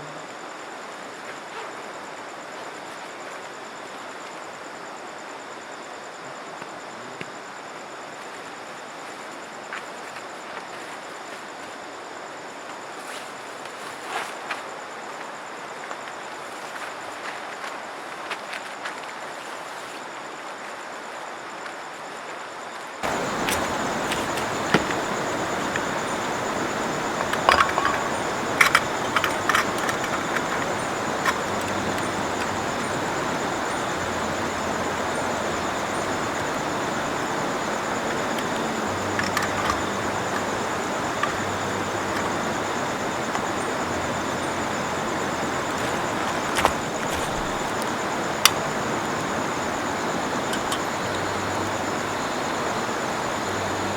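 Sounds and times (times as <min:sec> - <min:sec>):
sharp clicks and knocks: 0:23.0 - 0:32.6, 0:38.3 - 0:42.4
river flowing: 0:23.0 - 0:53.9.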